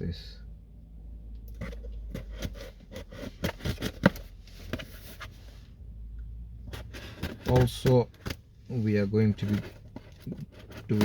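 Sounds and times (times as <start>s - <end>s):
cardboard parcel rustling: 1.6s - 5.5s, 6.7s - 11.0s.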